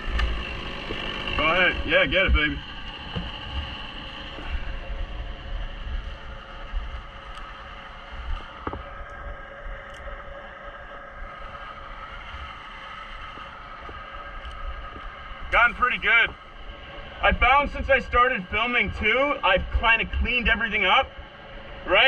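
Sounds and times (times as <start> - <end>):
engine running: 0.0 - 22.0.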